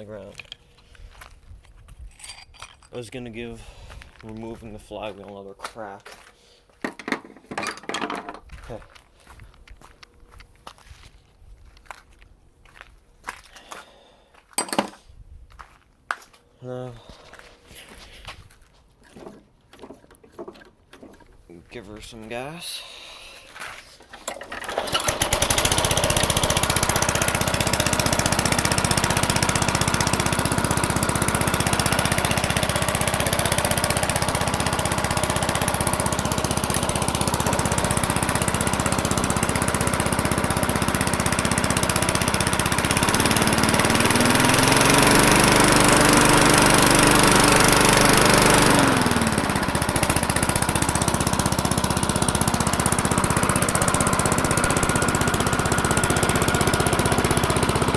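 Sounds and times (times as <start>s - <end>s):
lawn mower engine running: 24.0s - 57.9s.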